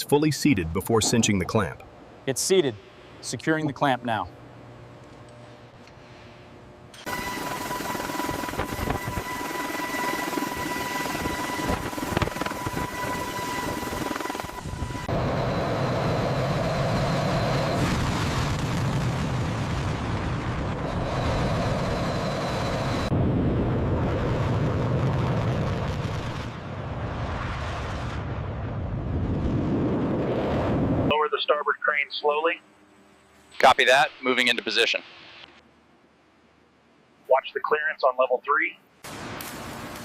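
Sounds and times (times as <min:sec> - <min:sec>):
high steady whine: 0:00.0 - 0:19.6, 0:20.2 - 0:23.9, 0:30.9 - 0:36.6.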